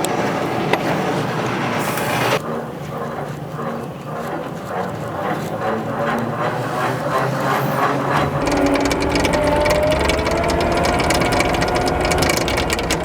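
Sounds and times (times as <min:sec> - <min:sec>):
low machinery hum: 0:00.0 - 0:13.0
clicking rattle: 0:02.0 - 0:13.0
rising whine: 0:05.7 - 0:13.0.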